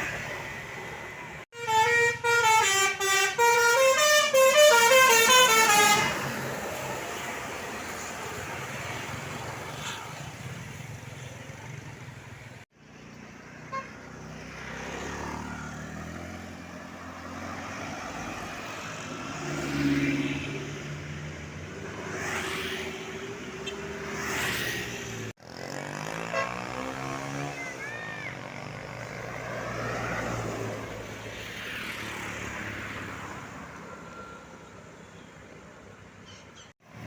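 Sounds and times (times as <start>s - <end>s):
road traffic passing: 0.0s - 37.0s
multi-tone bus horn: 1.5s - 6.4s, 13.6s - 14.0s, 26.1s - 27.5s.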